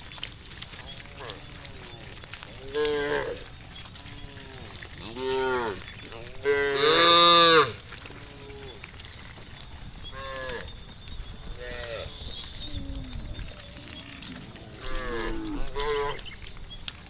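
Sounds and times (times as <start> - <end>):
cows mooing: 0.9 - 8.9, 10.1 - 10.8, 11.5 - 16.3.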